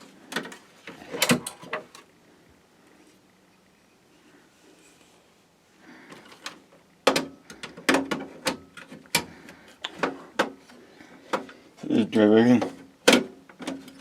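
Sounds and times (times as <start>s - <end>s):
soft rustle: 2.4s - 6.4s.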